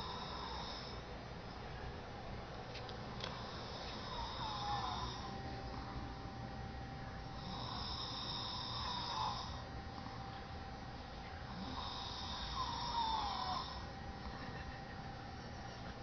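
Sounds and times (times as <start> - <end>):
person snoring: 0.0 - 1.0, 3.3 - 5.9, 7.3 - 10.2, 11.5 - 14.4.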